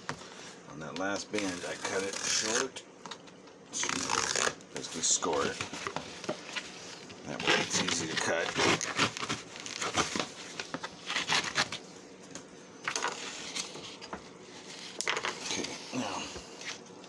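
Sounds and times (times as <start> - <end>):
blade scoring cardboard: 1.3 - 2.7, 3.8 - 6.7, 7.4 - 11.8
cardboard handling: 3.8 - 11.9, 12.9 - 16.8.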